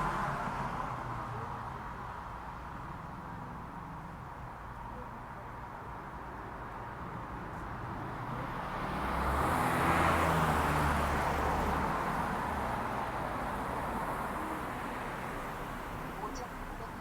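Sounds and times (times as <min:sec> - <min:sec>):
road vehicle passing by: 0:07.8 - 0:17.0.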